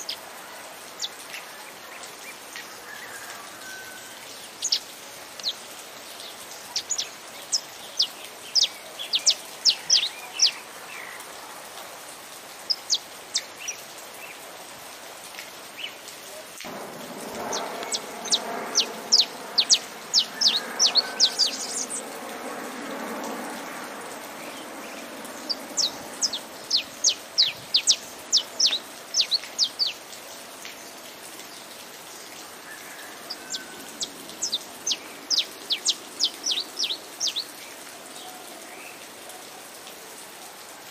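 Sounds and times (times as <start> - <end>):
rain hissing: 0.0 - 40.9
finch singing high chirps: 17.4 - 22.1, 24.5 - 30.0, 33.6 - 37.5.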